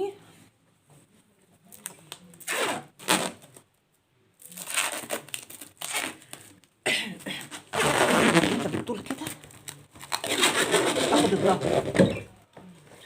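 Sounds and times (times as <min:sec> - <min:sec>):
cling film crinkling: 0:04.4 - 0:06.7.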